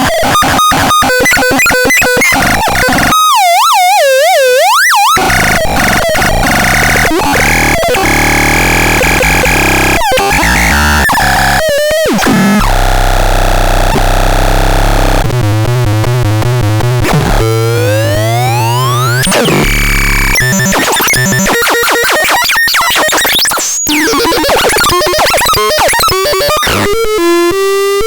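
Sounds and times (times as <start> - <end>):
harsh electronic synthesizer sounds: 0.0 - 28.0
synthesizer tone sweeping upward: 5.2 - 12.7.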